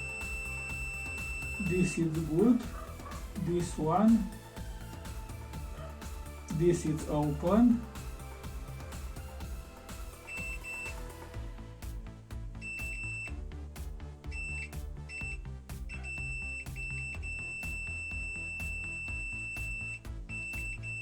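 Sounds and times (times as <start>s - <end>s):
multimeter continuity beeping: 0.0s - 2.8s, 10.2s - 11.1s
background music: 0.0s - 21.0s.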